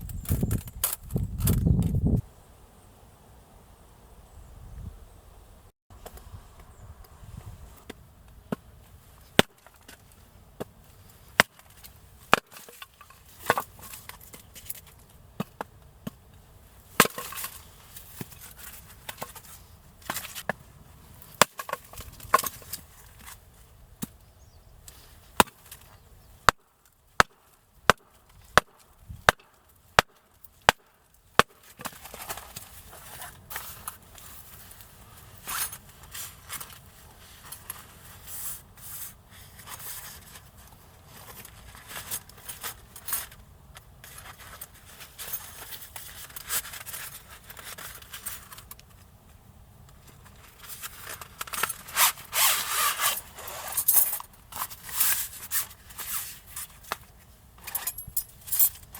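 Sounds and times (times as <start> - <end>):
sharp knocks splitting wood: 9.4 - 10.0, 12.3 - 12.8, 17.0 - 17.5, 25.4 - 25.8, 27.2 - 32.6
wood scraping and rubbing: 51.7 - 53.9.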